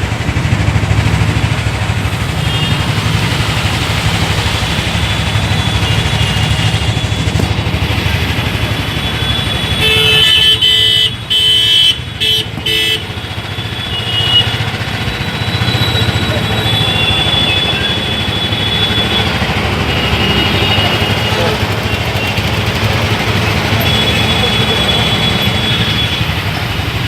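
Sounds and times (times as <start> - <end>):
traffic engines rumbling: 0.0 - 27.0
vehicle horn honking: 2.4 - 3.0, 9.0 - 14.8, 15.4 - 22.4, 23.6 - 26.4.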